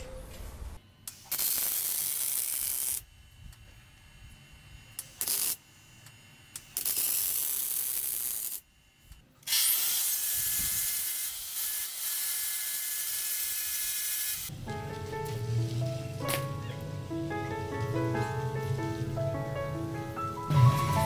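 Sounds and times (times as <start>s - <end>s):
music: 14.5s - 21.0s.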